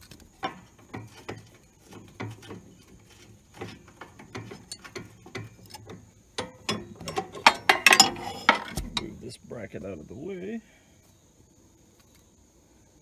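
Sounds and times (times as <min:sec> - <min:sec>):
metal clinks and rattles: 0:00.0 - 0:09.2.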